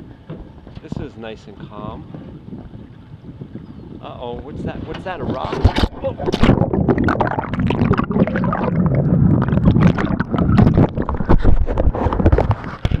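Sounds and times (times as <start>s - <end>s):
water splashing around a canoe: 4.2s - 13.0s.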